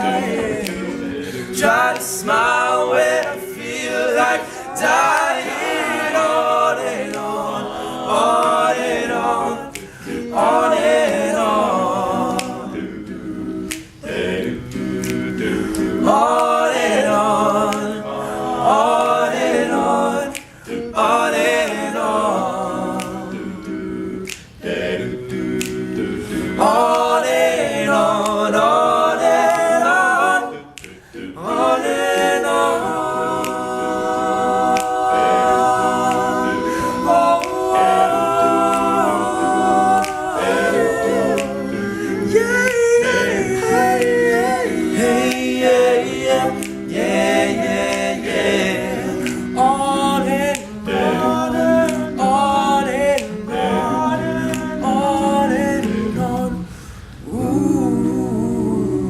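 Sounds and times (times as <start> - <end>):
men singing a cappella chords: 0.0 - 59.0
sharp beat clicks: 12.2 - 18.1, 30.8 - 53.7.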